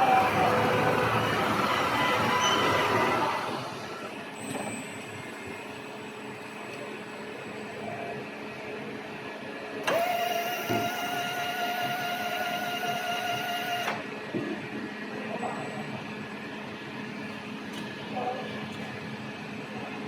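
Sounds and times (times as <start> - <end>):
factory machinery hum: 0.0 - 20.0.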